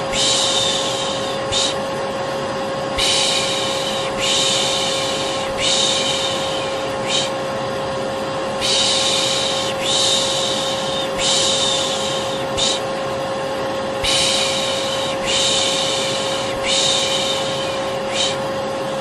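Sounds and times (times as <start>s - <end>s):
person shushing: 0.0s - 1.8s, 3.0s - 7.4s, 8.6s - 12.9s, 14.0s - 18.4s
vacuum cleaner running: 0.0s - 19.0s.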